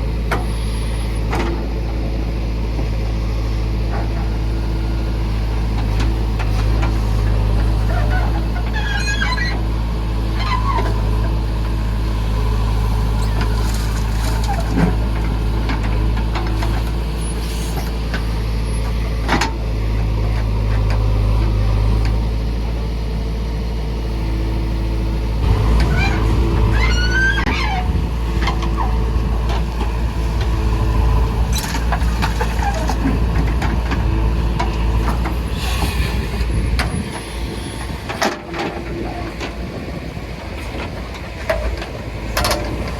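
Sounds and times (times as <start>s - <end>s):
diesel engine running under load: 0.0s - 42.9s
high squeaks: 25.5s - 28.0s.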